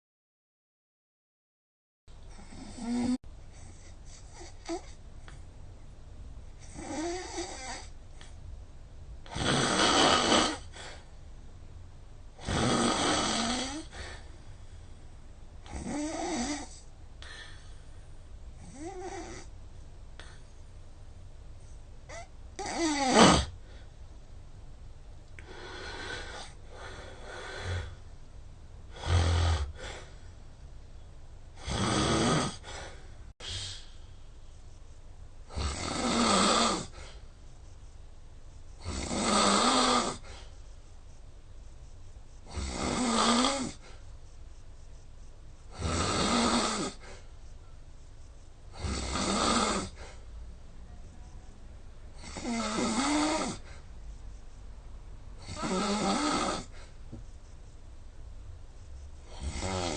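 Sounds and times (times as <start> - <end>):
person snoring loudly: 2.3 - 4.9, 6.6 - 7.9, 9.3 - 11.0, 12.4 - 14.2, 15.6 - 16.8, 18.6 - 19.5, 22.1 - 23.6, 28.9 - 30.1, 31.6 - 33.7, 35.5 - 37.1, 38.8 - 40.3, 42.5 - 43.8, 45.7 - 47.1, 48.7 - 50.1, 52.2 - 53.7, 55.4 - 56.8, 59.3 - 59.9.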